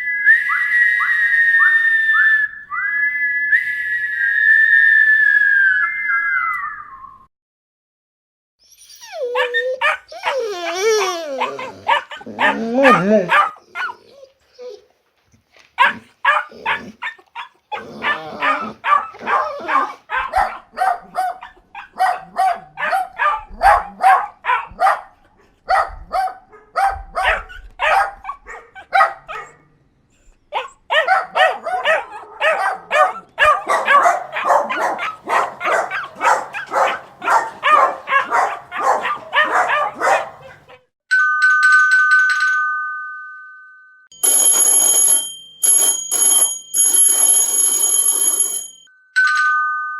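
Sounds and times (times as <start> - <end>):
dog barking rapidly: 9.4 - 10.4, 11.4 - 14.0, 15.8 - 29.6, 30.6 - 40.9
two-tone chime: 41.1 - 49.9.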